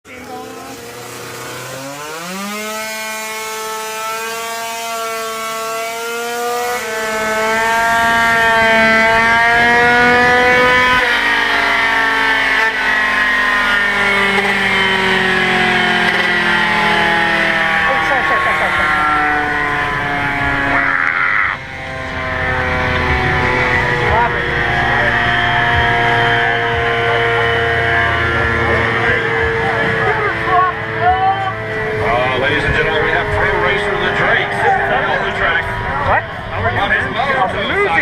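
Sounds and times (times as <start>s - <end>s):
two-stroke scooter engine revving: 0.1s - 38.0s.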